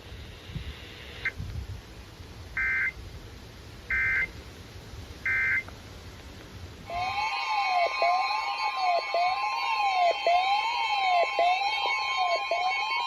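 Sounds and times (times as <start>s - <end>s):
background hiss: 0.0s - 7.8s.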